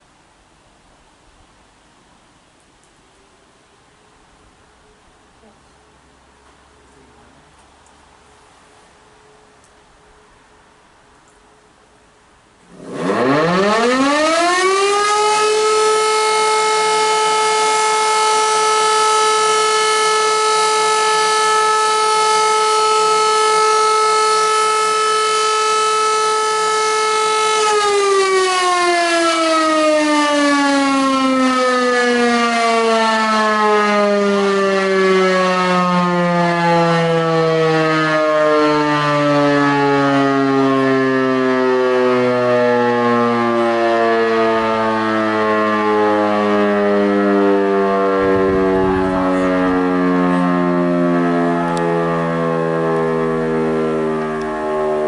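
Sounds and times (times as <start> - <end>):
electromechanical siren: 12.6 - 55.0.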